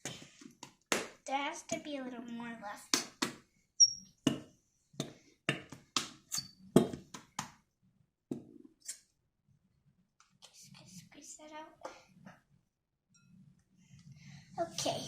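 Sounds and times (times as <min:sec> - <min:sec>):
plastic bottle squeak: 0:06.3 - 0:06.6.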